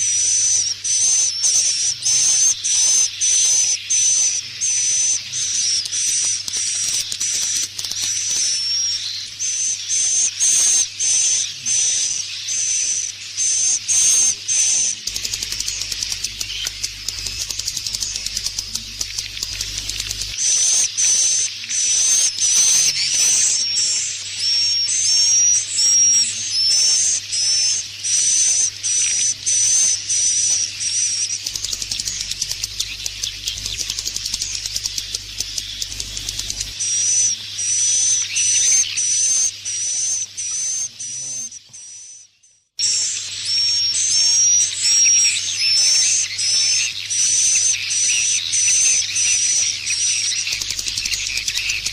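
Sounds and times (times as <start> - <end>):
high twittering bird chirps: 0.0 - 51.9
rapid rattling clicks: 15.1 - 20.5, 31.4 - 36.8, 50.4 - 51.9.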